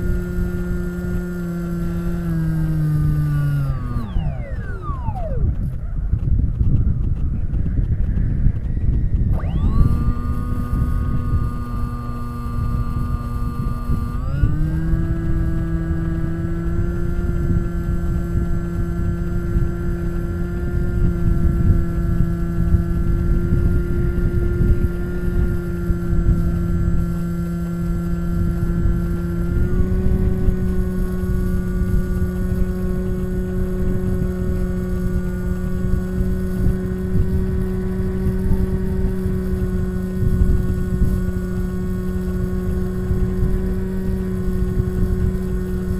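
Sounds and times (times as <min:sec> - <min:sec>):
airflow rushing over microphone: 0:00.0 - 0:45.9
electric motor and propeller whine: 0:00.0 - 0:45.9.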